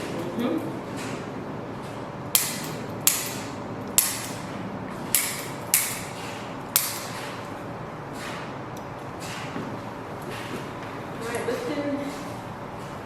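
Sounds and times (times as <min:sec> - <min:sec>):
sharp mechanical clacks: 0:00.0 - 0:13.0.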